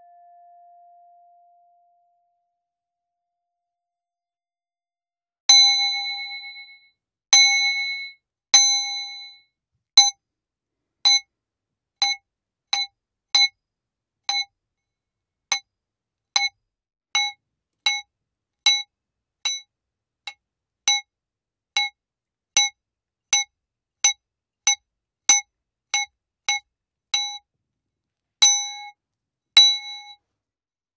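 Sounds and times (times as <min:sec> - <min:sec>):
bowl struck ringing: 0:00.0 - 0:01.9.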